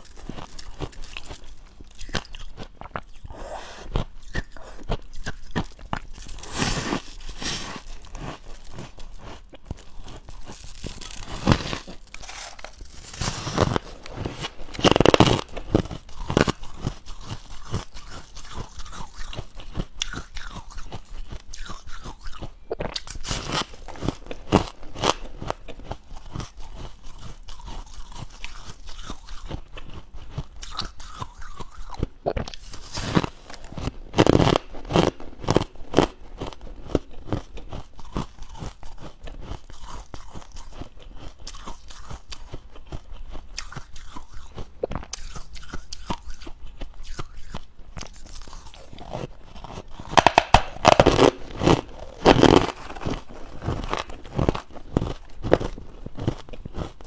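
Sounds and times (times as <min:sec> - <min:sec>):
person crunching ice while chewing: 0:00.0 - 0:57.0.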